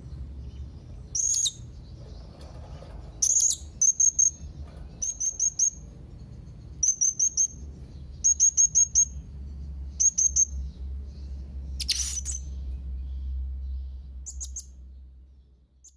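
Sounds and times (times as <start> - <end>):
steady low hum: 0.0 - 15.9
parrot shrill chirps: 1.2 - 1.6, 11.8 - 12.5.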